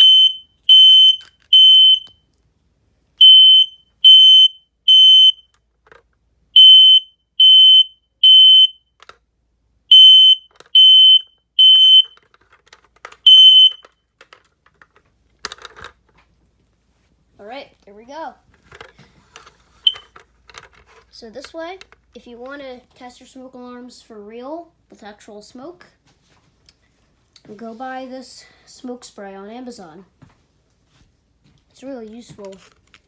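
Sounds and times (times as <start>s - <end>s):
smoke alarm beeping: 0.0s - 2.2s, 3.2s - 5.5s, 6.6s - 8.8s, 9.9s - 12.2s, 13.3s - 13.9s, 19.9s - 20.1s.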